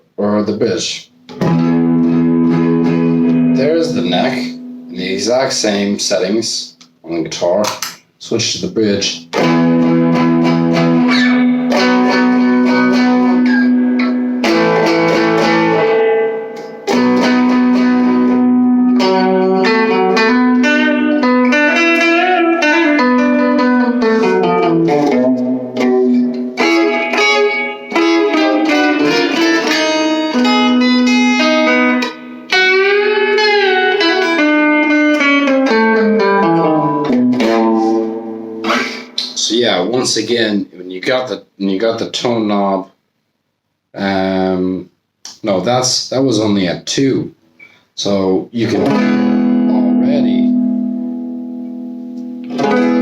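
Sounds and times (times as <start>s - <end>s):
overdriven electric guitar: 1.3s - 5.5s, 9.2s - 39.7s, 48.6s - 53.0s.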